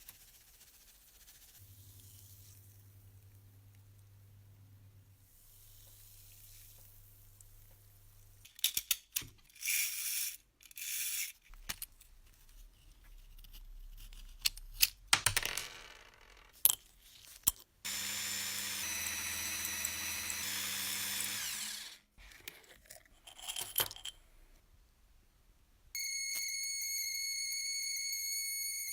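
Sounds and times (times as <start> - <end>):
small electric power tool running: 17.9 - 22.1.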